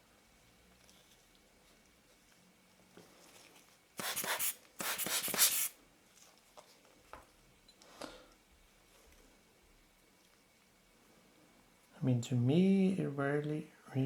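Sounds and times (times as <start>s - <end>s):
tissue rubbing on glass: 4.0s - 5.8s.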